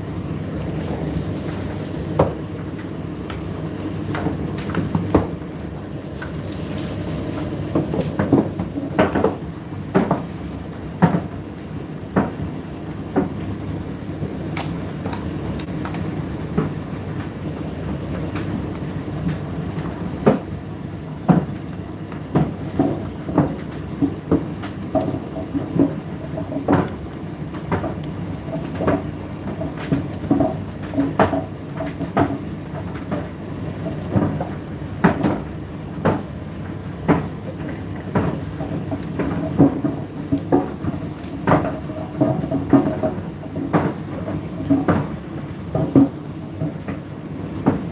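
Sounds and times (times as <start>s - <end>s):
tumble dryer motor and fan hum: 0.0s - 47.9s
load knocking in dryer drum: 37.0s - 47.9s.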